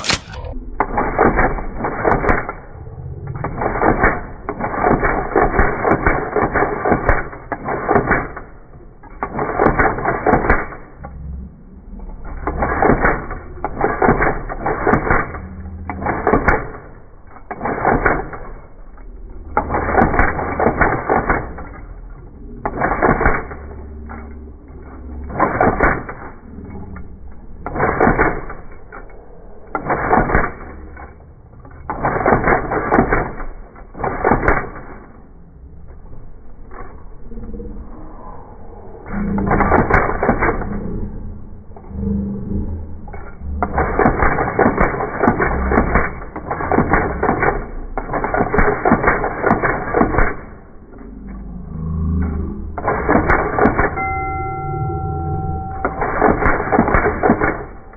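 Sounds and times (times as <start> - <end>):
electric typewriter typing: 0.0 - 2.5, 3.4 - 8.5, 9.2 - 10.8, 12.4 - 18.5, 19.6 - 21.7, 22.7 - 23.6, 31.9 - 34.9, 39.4 - 40.7, 43.6 - 50.6, 52.8 - 57.9.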